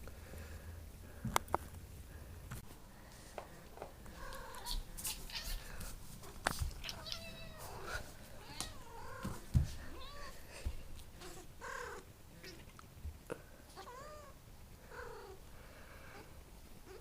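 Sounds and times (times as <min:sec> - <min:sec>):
cat meowing: 0:06.8 - 0:09.3.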